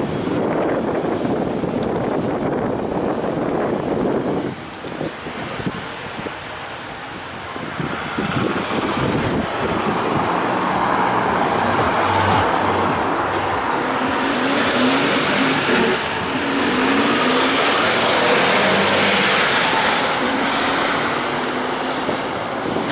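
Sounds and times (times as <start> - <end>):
vehicles passing close by: 0.0 - 22.9
engine revving as vehicle pulls away: 13.7 - 22.3.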